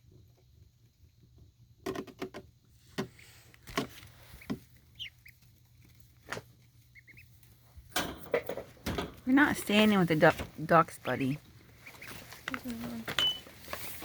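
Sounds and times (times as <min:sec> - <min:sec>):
duckling peeps: 0:04.2 - 0:05.5, 0:06.9 - 0:07.4, 0:11.1 - 0:13.4.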